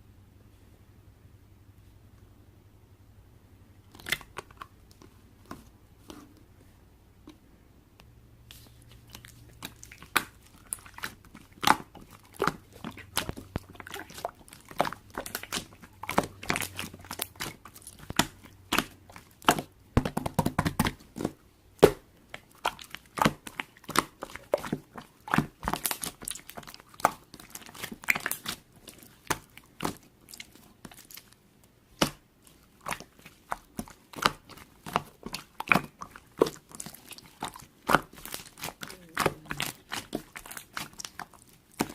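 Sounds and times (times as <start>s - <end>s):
crunching and crinkling: 8.5s - 20.2s, 20.8s - 41.9s.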